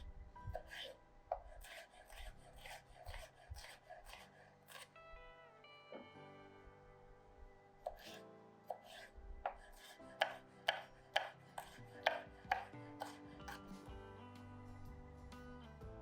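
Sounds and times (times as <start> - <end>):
soft background music: 0.0 - 16.0
knife chopping vegetables on board: 0.5 - 4.9, 7.8 - 13.8.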